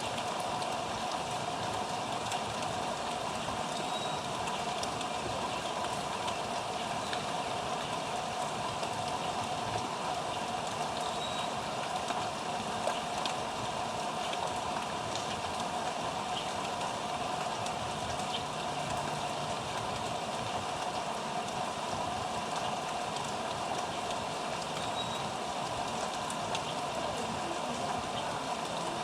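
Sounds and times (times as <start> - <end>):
small birds chirping: 3.7 - 4.6, 24.6 - 25.4, 26.5 - 29.0.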